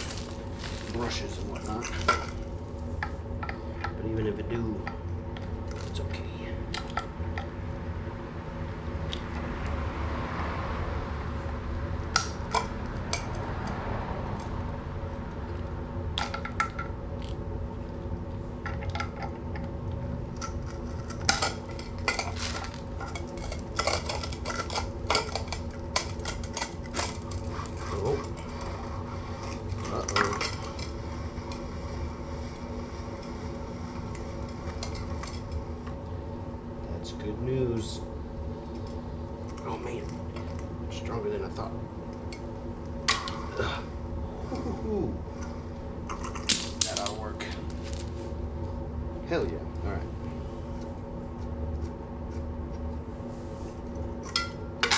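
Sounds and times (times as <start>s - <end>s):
steady hum: 0.0s - 54.9s
metal tools clinking on metal: 29.8s - 30.9s.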